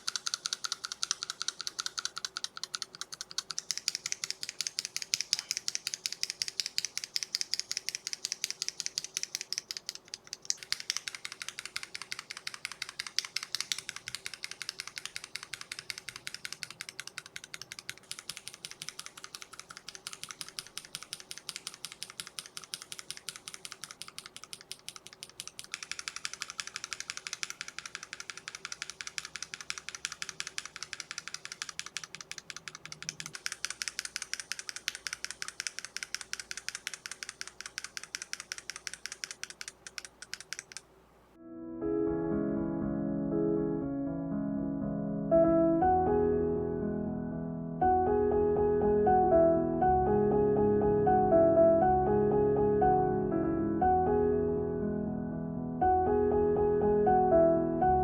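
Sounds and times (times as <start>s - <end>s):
mechanical keyboard switches clacking: 0.0s - 40.9s.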